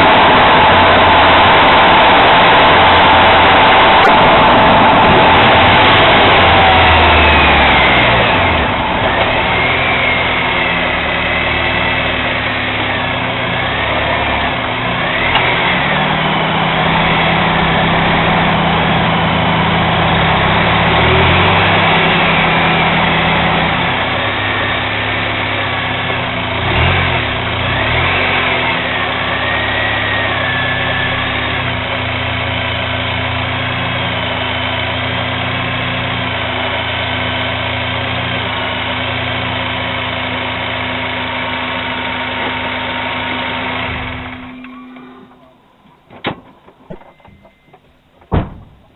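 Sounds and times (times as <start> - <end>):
car engine idling: 0.0 - 48.9.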